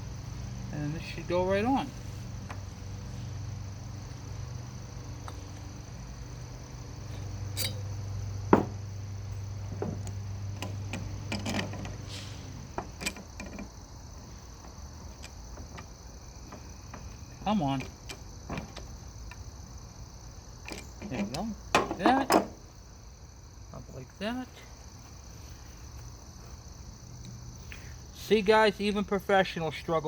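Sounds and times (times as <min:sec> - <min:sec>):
steady low hum: 0:00.0 - 0:29.1
metal engine parts clicking: 0:10.0 - 0:12.0, 0:12.7 - 0:13.8, 0:14.6 - 0:19.5, 0:20.6 - 0:22.4.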